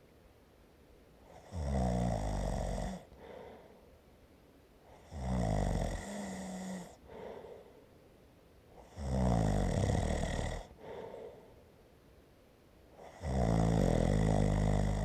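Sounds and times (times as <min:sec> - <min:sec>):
soft breathing: 0:03.0 - 0:04.1, 0:06.7 - 0:08.0, 0:10.6 - 0:11.9
person snoring: 0:08.8 - 0:11.3, 0:13.0 - 0:15.0.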